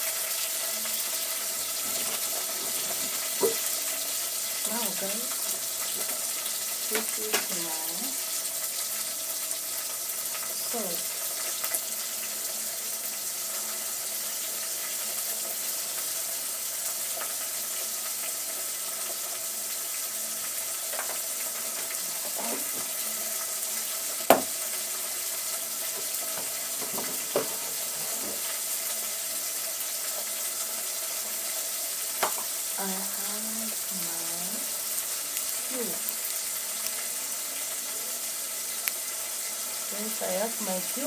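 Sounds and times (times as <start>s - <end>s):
sauce sizzling in a pot: 0.0s - 41.0s
knocks against a pot: 3.0s - 3.7s, 24.3s - 24.6s, 26.0s - 27.6s.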